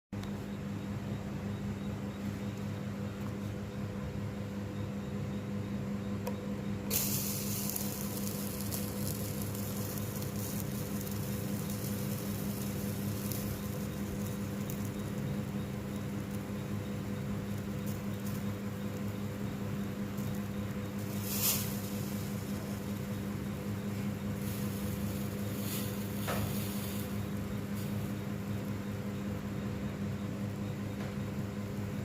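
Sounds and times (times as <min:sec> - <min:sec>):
steady low hum: 0:00.2 - 0:32.0
hot metal sizzling in liquid: 0:06.9 - 0:28.6
crackling: 0:06.9 - 0:29.6.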